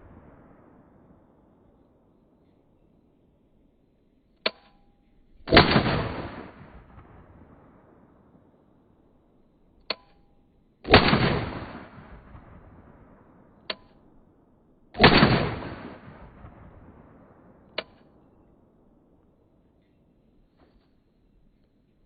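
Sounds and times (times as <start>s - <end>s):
pistol gunshots: 5.5s - 8.5s, 10.8s - 13.7s, 15.0s - 18.4s.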